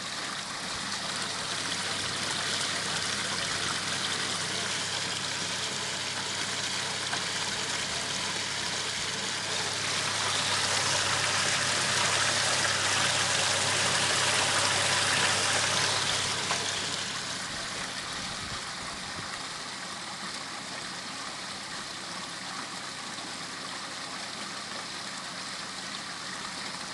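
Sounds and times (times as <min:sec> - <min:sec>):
water pouring and splashing: 0:00.0 - 0:26.9
steady low hum: 0:00.2 - 0:19.7.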